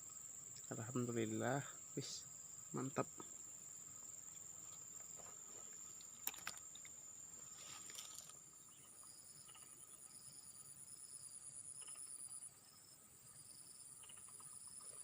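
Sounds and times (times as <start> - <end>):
high-pitched insect drone: 0.0 - 15.0
soft rustles: 7.4 - 8.4.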